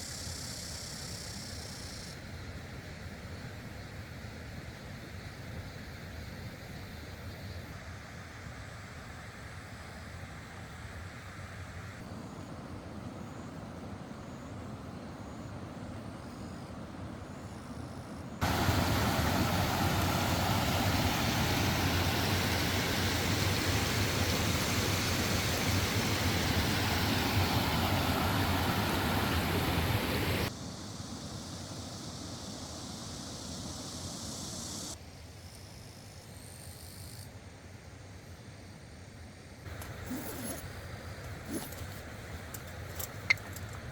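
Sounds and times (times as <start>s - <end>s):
stream rushing: 18.4s - 30.5s, 39.7s - 43.9s.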